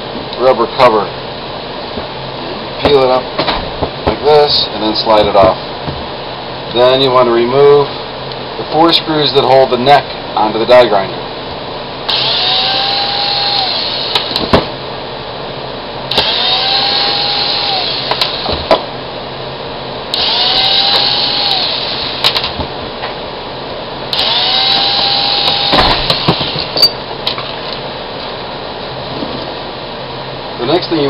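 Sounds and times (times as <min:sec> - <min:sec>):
cordless drill motor whining: 0:12.1 - 0:14.5, 0:16.1 - 0:18.5, 0:20.1 - 0:22.5, 0:24.1 - 0:26.8
sharp clicks and clinks: 0:25.0 - 0:27.4.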